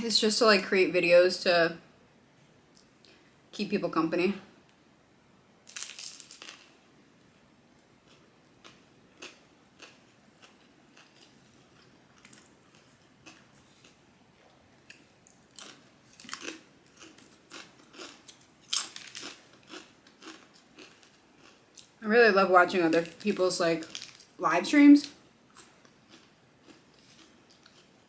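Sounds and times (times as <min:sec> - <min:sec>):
crisp crunches: 0:05.7 - 0:06.8, 0:14.9 - 0:21.9, 0:23.0 - 0:24.4
person chewing food: 0:08.0 - 0:22.0, 0:25.5 - 0:28.0.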